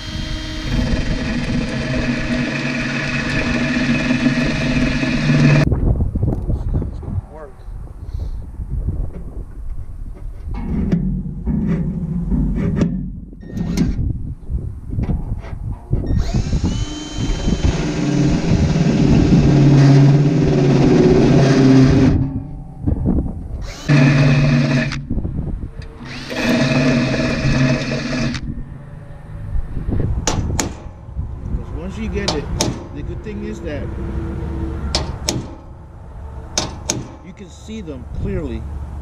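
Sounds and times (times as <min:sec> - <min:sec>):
power drill boring into metal: 0:00.0 - 0:05.6, 0:16.1 - 0:22.3, 0:23.6 - 0:25.1, 0:25.9 - 0:28.4
knocks and clatter: 0:10.2 - 0:14.0.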